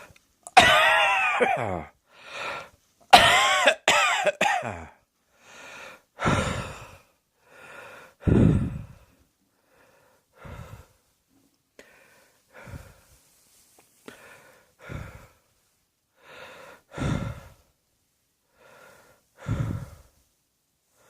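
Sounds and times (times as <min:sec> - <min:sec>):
person breathing heavily: 0:01.6 - 0:02.8, 0:04.7 - 0:11.2, 0:11.8 - 0:17.8, 0:18.4 - 0:21.0.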